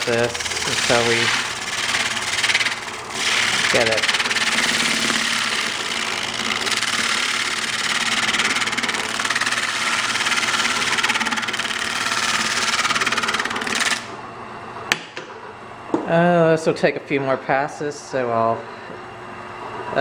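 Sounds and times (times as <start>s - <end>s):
gouge hissing cutting foam: 0.0s - 14.0s
lathe motor humming: 0.0s - 14.2s.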